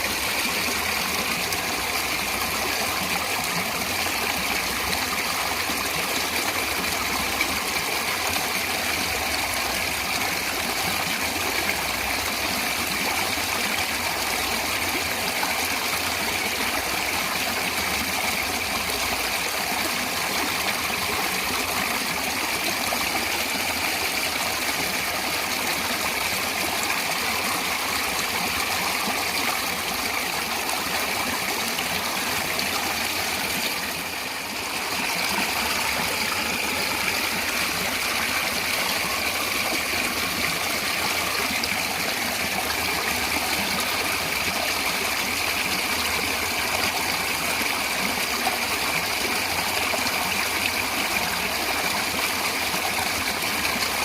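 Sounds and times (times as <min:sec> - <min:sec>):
stream rushing: 0:00.0 - 0:54.0.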